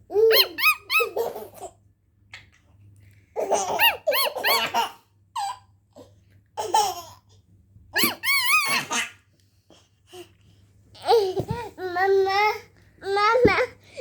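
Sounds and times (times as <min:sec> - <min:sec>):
baby laughing squealing: 0:00.1 - 0:01.7, 0:03.4 - 0:05.6, 0:08.0 - 0:09.2.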